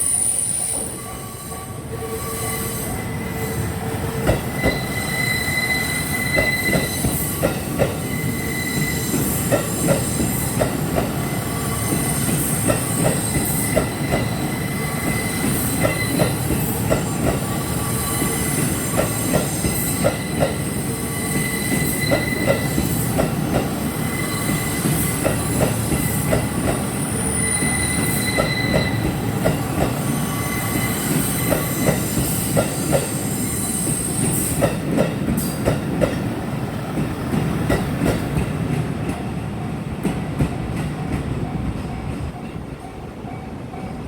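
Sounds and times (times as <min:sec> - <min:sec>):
train wheels clacking on rail joints: 0:04.2 - 0:05.0, 0:06.2 - 0:08.1, 0:08.8 - 0:23.9, 0:24.5 - 0:26.9, 0:27.5 - 0:33.2, 0:33.8 - 0:39.4
high-pitched wheel squeal: 0:04.5 - 0:07.4, 0:08.0 - 0:09.5, 0:11.6 - 0:16.4, 0:17.8 - 0:22.9, 0:23.9 - 0:25.1, 0:27.0 - 0:29.1, 0:30.1 - 0:32.0.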